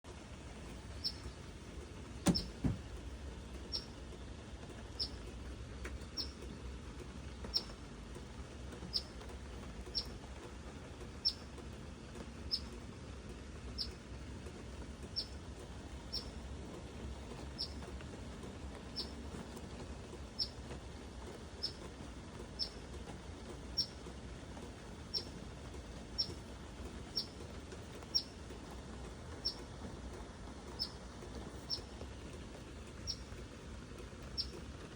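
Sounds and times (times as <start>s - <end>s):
bird chip calls: 0.9s - 1.4s, 2.2s - 2.8s, 3.6s - 4.0s, 4.9s - 5.3s, 6.0s - 6.6s, 7.5s - 7.8s, 8.9s - 10.2s, 11.2s - 11.5s, 12.4s - 12.8s, 13.7s - 14.0s, 15.1s - 15.4s, 16.0s - 16.4s, 17.4s - 17.9s, 18.8s - 19.3s, 20.2s - 20.6s, 21.6s - 21.9s, 22.5s - 22.8s, 23.7s - 24.0s, 25.0s - 25.4s, 26.1s - 26.5s, 27.1s - 28.5s, 29.3s - 29.7s, 30.7s - 32.0s, 33.0s - 33.4s, 34.2s - 34.6s
loud knocks: 2.2s - 3.0s.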